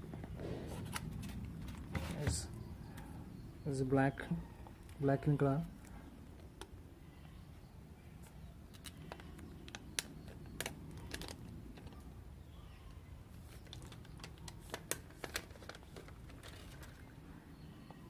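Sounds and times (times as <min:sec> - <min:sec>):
packaging rustling: 0:08.8 - 0:12.0, 0:13.4 - 0:17.2.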